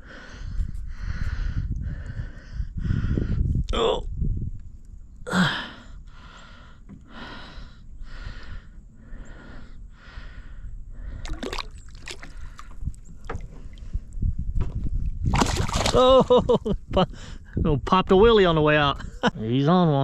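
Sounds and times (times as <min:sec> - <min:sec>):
rapid panting breaths: 0:05.5 - 0:11.3
sharp clicks or splashes: 0:11.2 - 0:13.5, 0:15.2 - 0:16.2.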